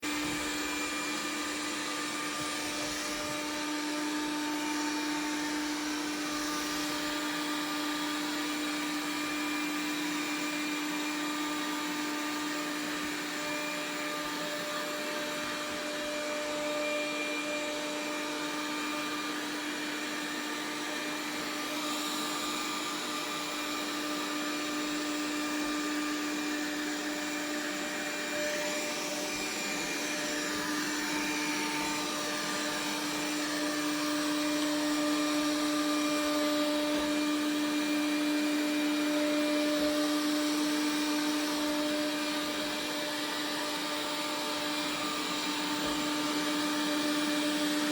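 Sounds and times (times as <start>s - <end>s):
robot vacuum humming: 0.0s - 47.9s.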